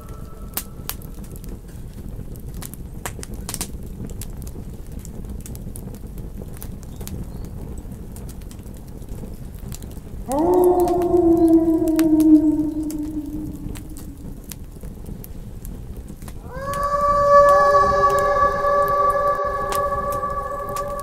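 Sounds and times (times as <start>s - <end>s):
wolf howling: 0.0s - 1.1s, 10.3s - 14.6s, 16.4s - 21.0s
campfire crackling and popping: 0.0s - 21.0s
low rumble: 10.3s - 14.7s, 16.4s - 21.0s.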